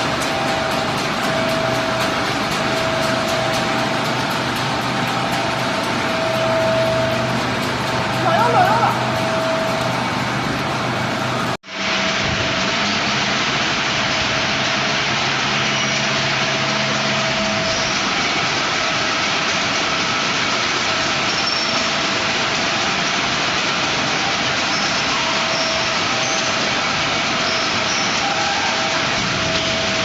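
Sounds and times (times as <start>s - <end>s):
heavy machinery running: 0.0s - 30.0s.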